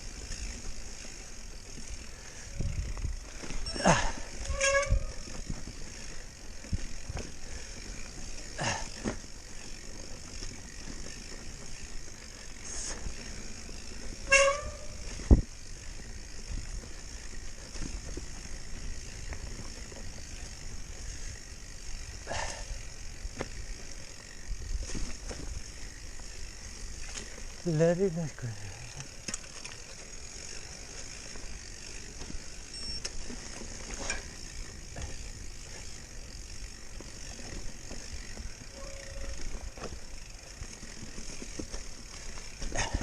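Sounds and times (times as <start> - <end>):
bike clattering over rough ground: 0.0 - 43.0
bike disc brakes squealing: 1.4 - 6.9, 7.5 - 16.0, 30.2 - 40.3.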